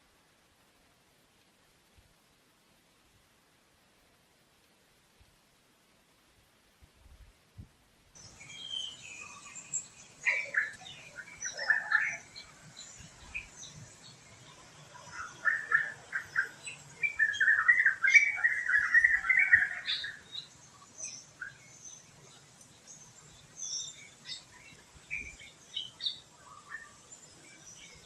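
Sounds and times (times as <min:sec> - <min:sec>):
wild birds chirping: 0:08.2 - 0:28.0.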